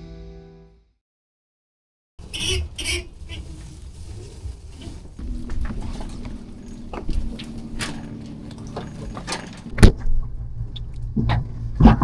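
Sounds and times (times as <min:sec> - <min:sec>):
knocks and clatter in a dinghy: 0:04.3 - 0:12.0.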